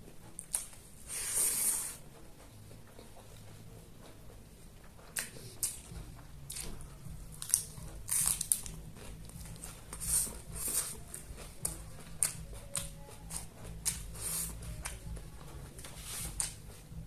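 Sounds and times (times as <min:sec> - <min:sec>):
person biting and chewing food: 0:04.9 - 0:16.9.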